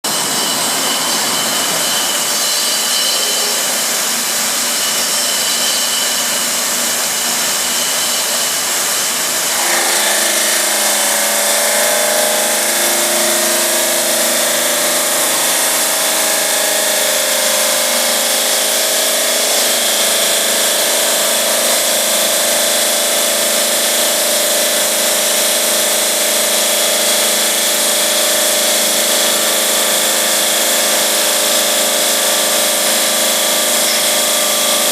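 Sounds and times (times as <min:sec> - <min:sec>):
saw blade grinding stone: 0:00.0 - 0:34.9.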